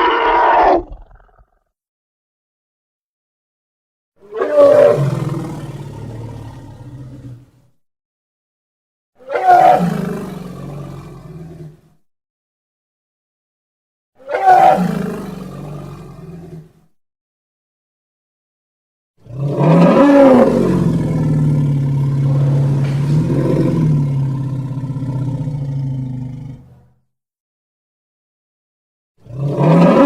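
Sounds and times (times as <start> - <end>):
dinosaur roar: 0.0 - 1.6, 4.3 - 7.5, 9.2 - 11.8, 14.3 - 16.7, 19.2 - 26.9, 29.2 - 30.0.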